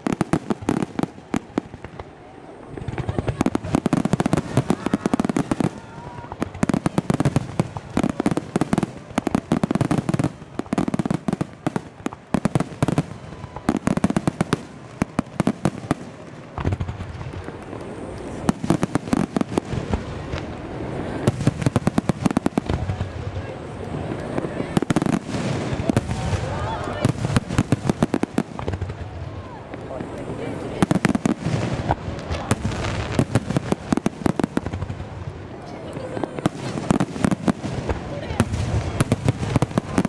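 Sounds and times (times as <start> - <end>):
fireworks bangs and crackles: 0.0 - 40.0.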